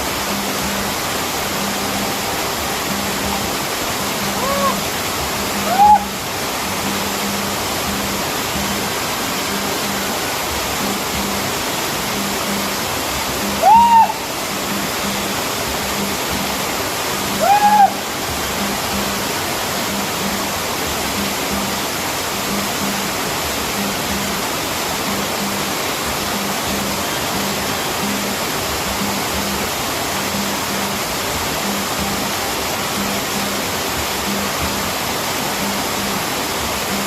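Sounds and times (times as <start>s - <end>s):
waterfall rushing: 0.0s - 37.0s
whistle-like calls: 1.6s - 6.3s, 13.3s - 16.2s, 17.2s - 19.2s.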